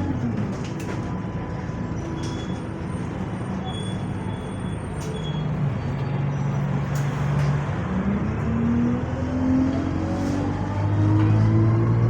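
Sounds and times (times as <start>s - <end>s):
bus drivetrain humming: 0.0s - 12.0s.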